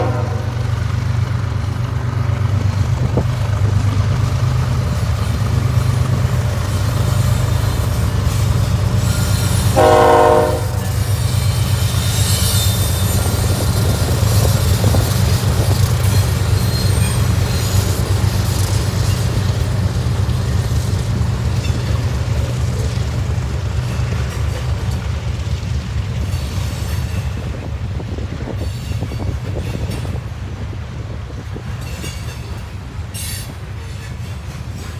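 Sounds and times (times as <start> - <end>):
locomotive air horn blast: 0.0 - 0.7, 9.1 - 11.0
diesel locomotive engine running: 0.0 - 34.9
high wheel squeal: 6.2 - 24.9, 31.9 - 34.9.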